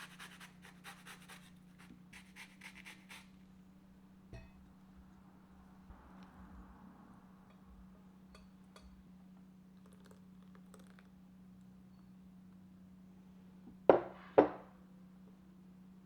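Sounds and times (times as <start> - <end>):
dishes knocking on counter: 13.9 - 14.7.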